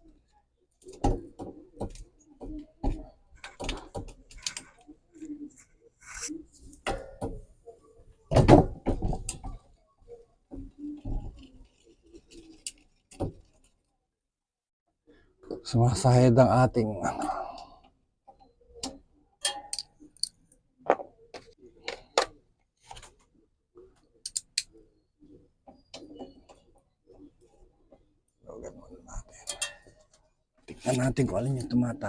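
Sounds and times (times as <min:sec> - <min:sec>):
bicycle parts and tools clattering: 0:10.5 - 0:13.8, 0:18.3 - 0:23.1, 0:29.2 - 0:31.0.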